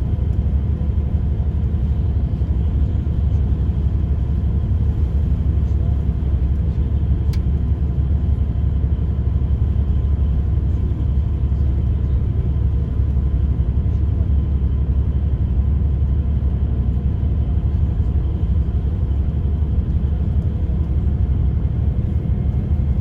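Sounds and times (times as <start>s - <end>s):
bus engine and road rumble: 0.0s - 23.0s
faint click: 7.3s - 7.5s.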